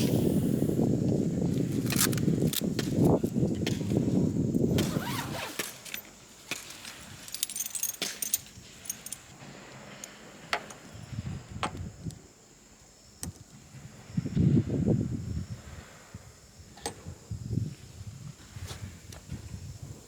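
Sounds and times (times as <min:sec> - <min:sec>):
metallic clinks of camping gear: 0:01.5 - 0:11.2.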